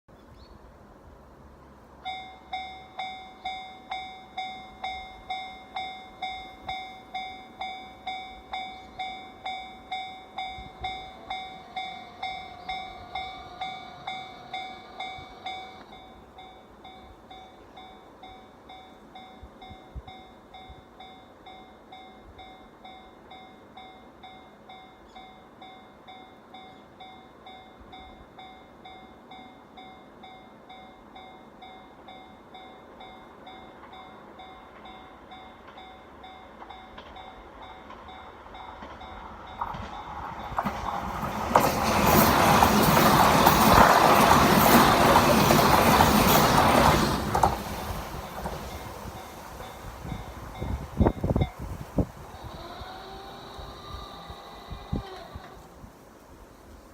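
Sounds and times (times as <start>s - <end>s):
level-crossing electronic bell ringing: 2.1s - 17.5s.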